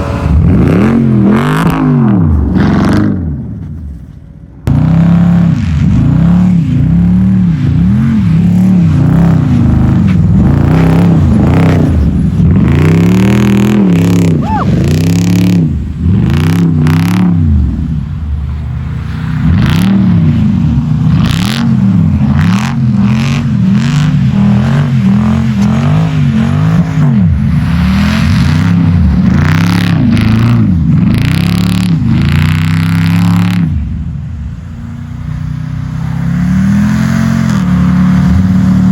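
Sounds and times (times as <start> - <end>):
car engine revving hard: 0.0 - 3.2, 4.7 - 17.9, 19.2 - 33.8.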